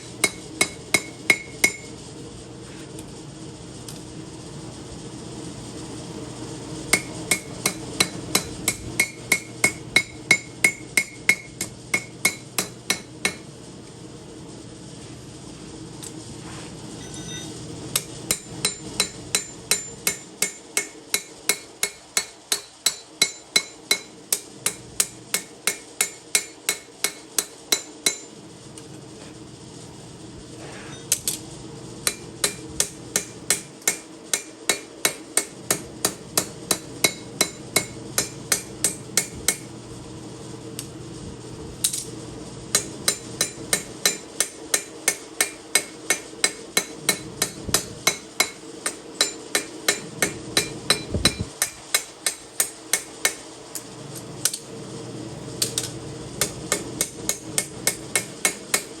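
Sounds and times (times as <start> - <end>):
hammer ringing on anvil: 0.2 - 1.9, 7.0 - 13.4, 17.1 - 28.3, 32.1 - 39.6, 42.8 - 53.4, 56.4 - 58.9.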